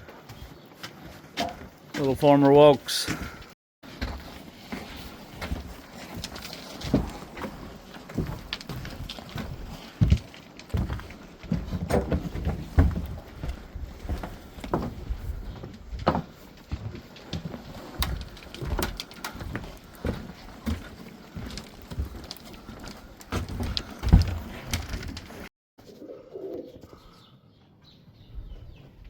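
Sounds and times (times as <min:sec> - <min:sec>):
knocks and crunches: 0:03.2 - 0:25.5
pigeons cooing: 0:25.8 - 0:27.4.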